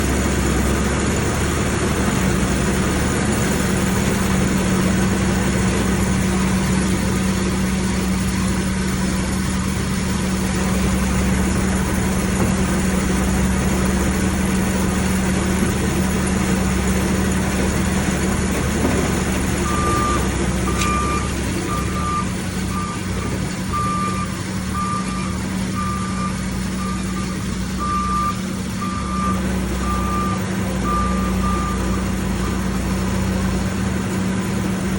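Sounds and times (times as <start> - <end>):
loader engine running: 0.0 - 34.9
reversing alarm beeping: 19.6 - 32.7.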